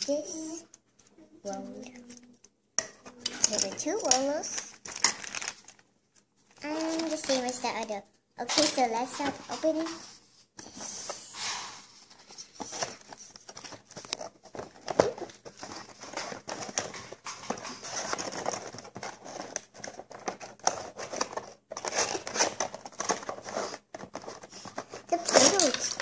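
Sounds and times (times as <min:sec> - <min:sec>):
packaging rustling and tearing: 0:03.4 - 0:05.9, 0:06.5 - 0:07.9, 0:11.4 - 0:26.0.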